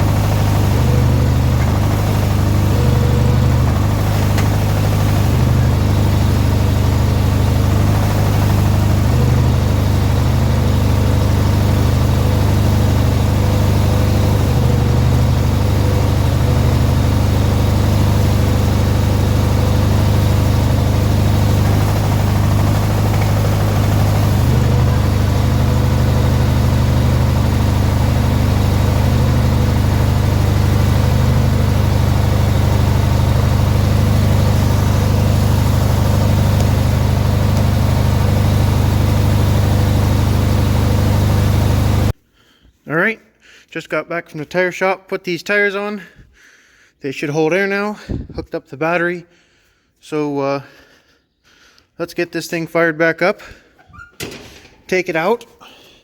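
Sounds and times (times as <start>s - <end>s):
lawn tractor engine idling: 0.0s - 42.2s, 53.4s - 56.0s.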